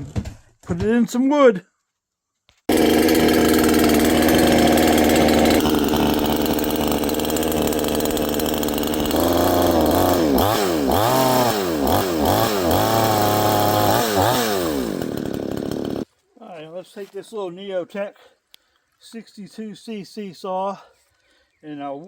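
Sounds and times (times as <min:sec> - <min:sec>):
chainsaw engine revving: 0:02.7 - 0:16.1.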